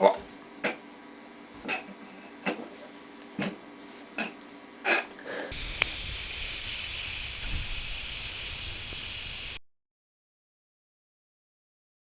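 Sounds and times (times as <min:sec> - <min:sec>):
steady static hiss: 0:05.5 - 0:09.6.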